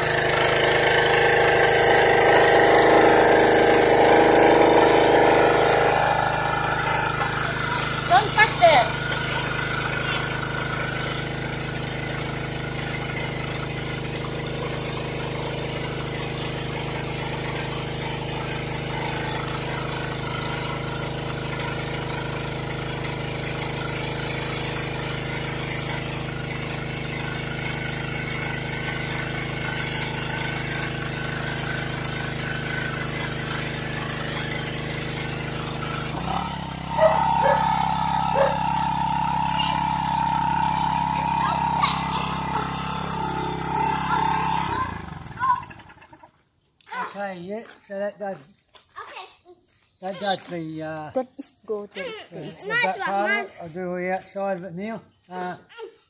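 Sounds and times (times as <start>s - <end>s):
spray hissing: 0.0s - 44.8s
pressure washer running: 0.0s - 46.4s, 52.4s - 53.6s
high steady tone: 0.6s - 9.5s.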